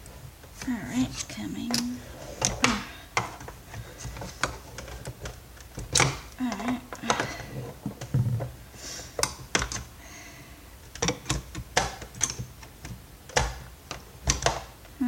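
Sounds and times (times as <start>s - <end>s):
plastic clicks and knocks: 1.7s - 8.6s, 9.2s - 9.9s, 10.9s - 14.9s.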